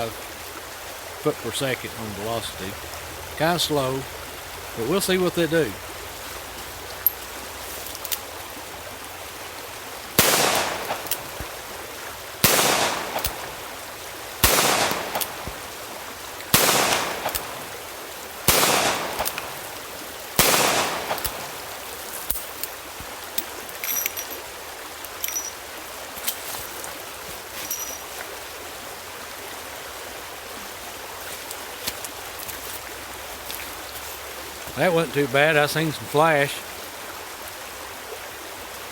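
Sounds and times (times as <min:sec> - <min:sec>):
revolver gunshots with echo: 0:10.2 - 0:11.1, 0:12.4 - 0:13.4, 0:14.4 - 0:15.4, 0:16.6 - 0:17.5, 0:18.5 - 0:19.4, 0:20.4 - 0:21.5.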